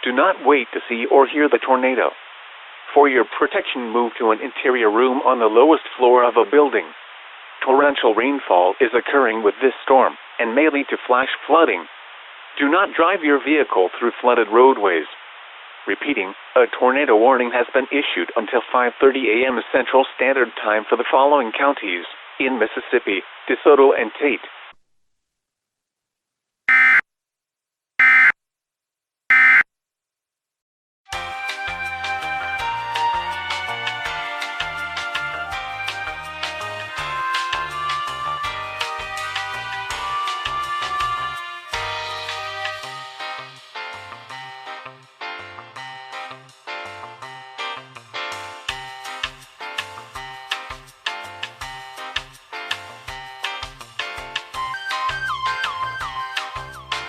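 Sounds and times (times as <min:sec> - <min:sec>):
high steady tone: 0:26.7 - 0:27.0, 0:29.3 - 0:29.6, 0:54.6 - 0:57.0
music: 0:31.1 - 0:57.0.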